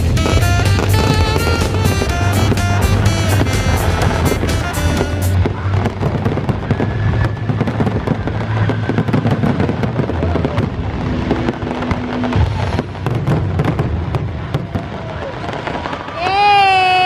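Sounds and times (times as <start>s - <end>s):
music playing: 0.0s - 6.2s, 10.8s - 13.3s
low rumble: 0.0s - 14.5s
fireworks bangs and crackling: 0.0s - 17.0s.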